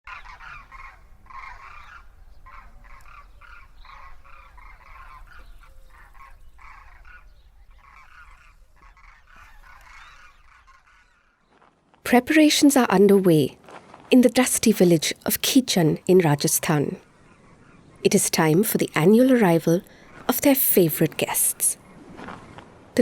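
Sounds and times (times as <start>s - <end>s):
flock of cranes calling: 0.1s - 11.8s.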